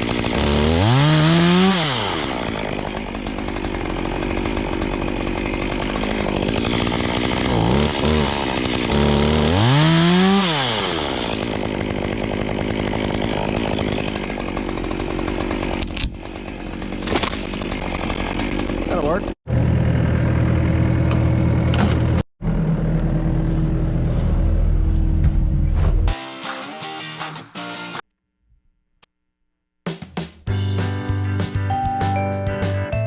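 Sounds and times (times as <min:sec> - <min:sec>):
chainsaw revving and idling: 0:00.0 - 0:21.6.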